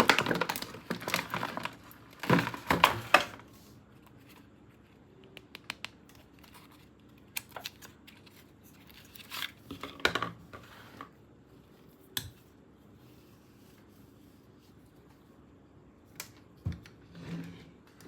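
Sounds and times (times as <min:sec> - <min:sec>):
packaging rustling: 0:00.0 - 0:03.5.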